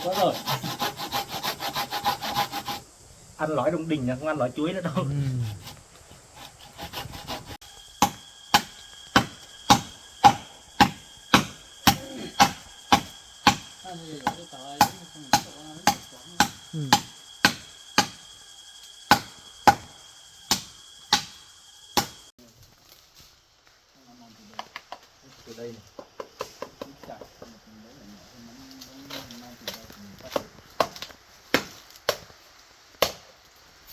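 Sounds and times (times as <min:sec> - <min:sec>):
chopping into palm trunk: 0:08.0 - 0:13.7.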